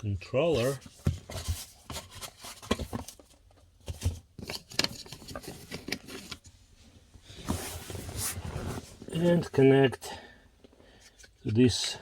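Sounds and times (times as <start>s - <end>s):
plastic parts and wiring handled: 0.5s - 6.5s.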